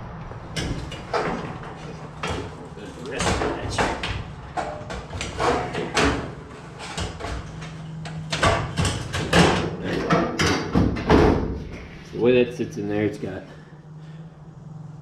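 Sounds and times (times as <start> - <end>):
sheet metal scraping and clanking: 0.3 - 12.1.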